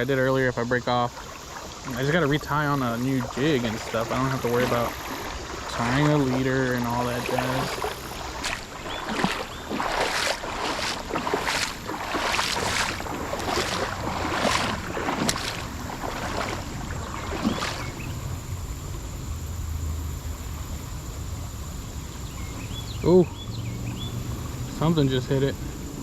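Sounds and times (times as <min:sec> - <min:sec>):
water sloshing and splashing: 0:00.0 - 0:18.2
creek water hissing: 0:00.0 - 0:26.0.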